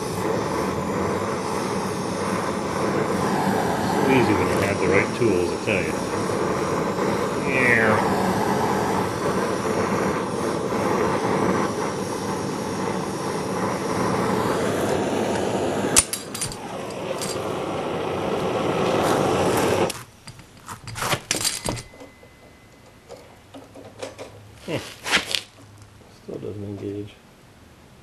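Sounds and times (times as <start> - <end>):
torch flame hissing: 0.0 - 22.0, 22.7 - 26.7
light metal clinks: 20.2 - 24.4.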